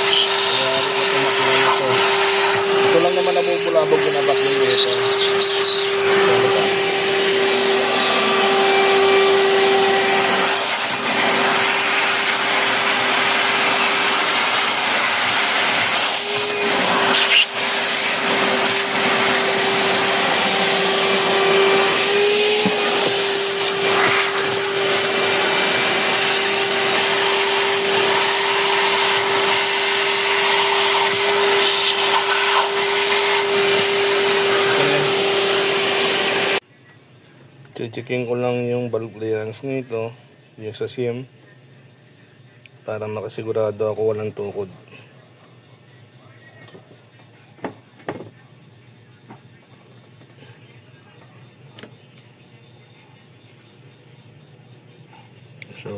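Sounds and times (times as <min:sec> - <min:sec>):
vacuum cleaner running: 0:00.0 - 0:36.6.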